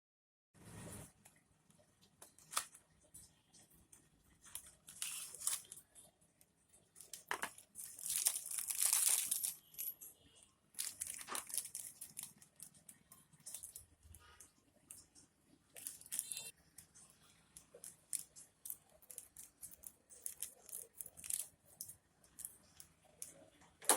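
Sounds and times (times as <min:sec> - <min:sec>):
packaging crinkling and tearing: 0:04.4 - 0:05.9, 0:07.0 - 0:09.7, 0:10.8 - 0:13.9, 0:15.8 - 0:16.5, 0:17.7 - 0:22.6.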